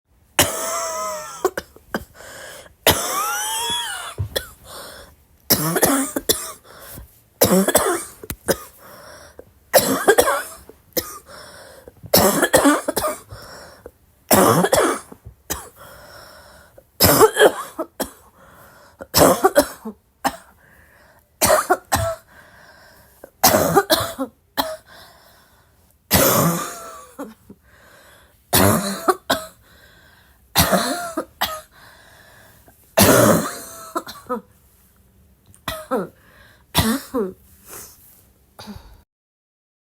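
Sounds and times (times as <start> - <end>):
person coughing: 0.4 - 8.9, 9.8 - 11.4, 12.1 - 13.4, 14.3 - 15.8, 17.0 - 18.3, 19.0 - 20.6, 21.4 - 22.3, 23.4 - 24.9, 26.1 - 27.4, 28.6 - 29.6, 30.6 - 31.7, 33.0 - 34.5, 35.7 - 36.2, 36.8 - 37.4, 38.6 - 39.0.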